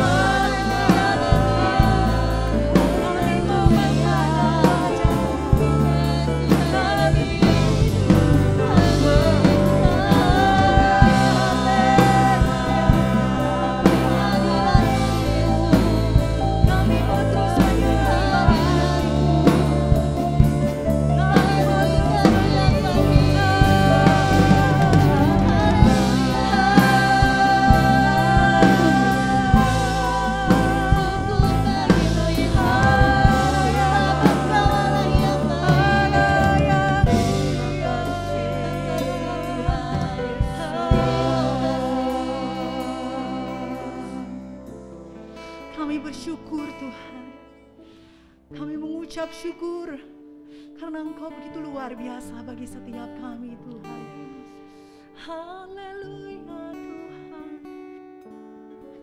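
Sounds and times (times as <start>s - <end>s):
drum kit beat: 0.0s - 43.9s
person singing: 0.0s - 44.9s, 50.8s - 57.9s
bass: 0.0s - 50.0s
keyboard: 0.0s - 54.9s.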